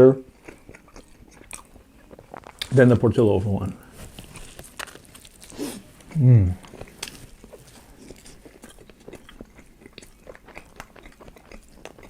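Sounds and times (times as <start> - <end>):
person chewing food: 0.2 - 12.0.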